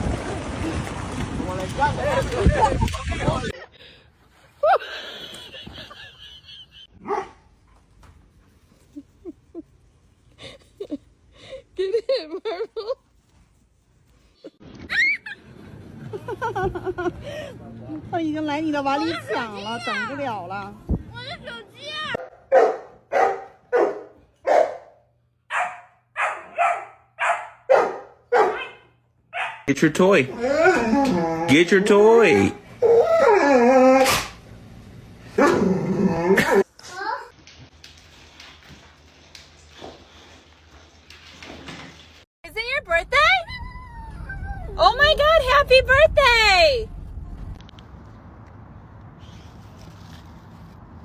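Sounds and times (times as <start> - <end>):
dog barking: 7.0 - 7.5, 22.2 - 29.7
dog yipping: 22.2 - 24.9, 25.5 - 29.7.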